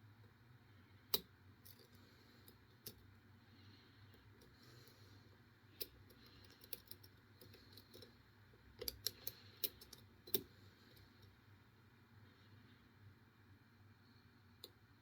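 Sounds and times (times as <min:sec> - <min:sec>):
lock pick clicking: 0:08.8 - 0:10.4.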